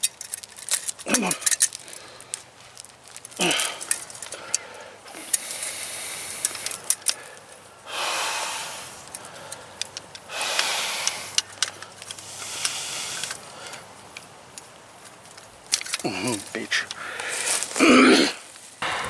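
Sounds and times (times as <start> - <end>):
clicks of wire and tools: 0.0 - 5.8, 6.4 - 7.3, 9.0 - 17.3
man breathing heavily: 1.1 - 2.6, 3.3 - 13.9, 16.1 - 19.0.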